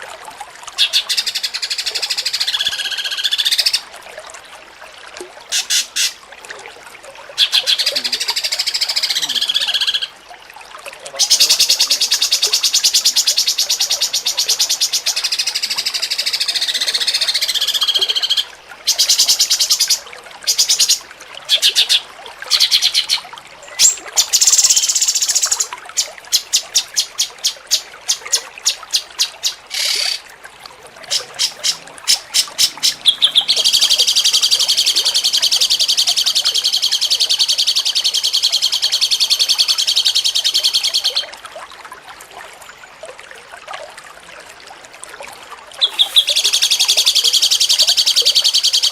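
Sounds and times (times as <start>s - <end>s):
songbird singing high trills: 31.1s - 41.3s, 45.8s - 48.9s.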